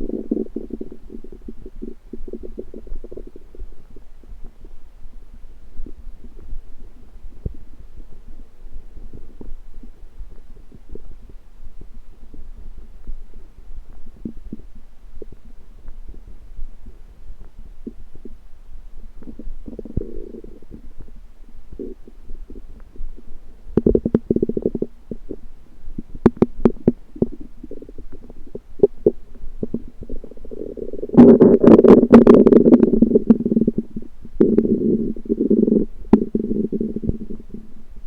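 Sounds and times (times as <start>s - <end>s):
steady low hum: 0.0s - 38.0s
stomach rumbling: 0.0s - 38.0s
small gurgles and clicks: 19.2s - 38.0s.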